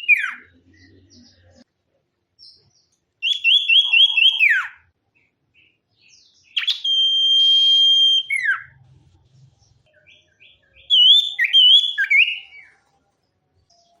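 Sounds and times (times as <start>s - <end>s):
bird warbling: 3.2s - 4.8s
bird long high whistle: 6.6s - 8.6s.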